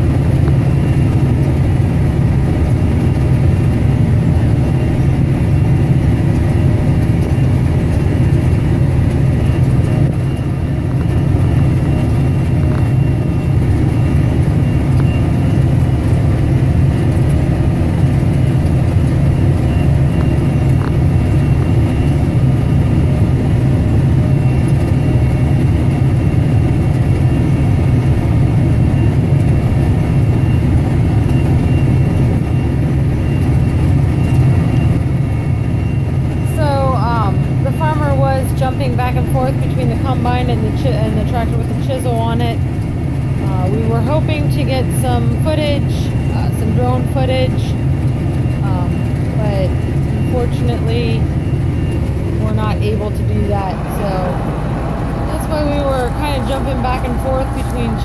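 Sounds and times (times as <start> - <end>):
diesel engine running: 0.0 - 58.0.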